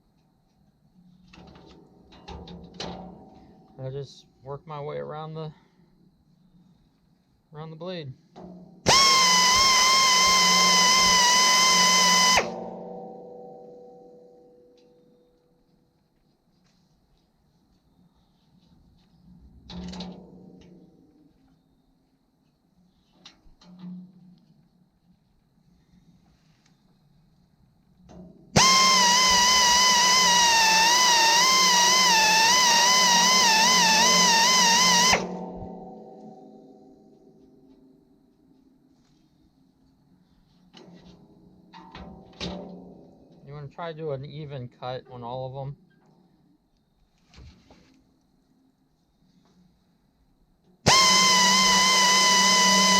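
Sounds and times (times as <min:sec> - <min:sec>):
electric grinder whining: 0:08.9 - 0:12.7, 0:28.6 - 0:35.7, 0:50.9 - 0:52.9.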